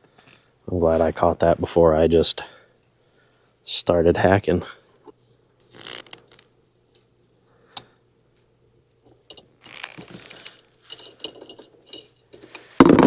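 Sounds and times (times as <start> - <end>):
wire cutting and scraping: 9.3 - 12.6.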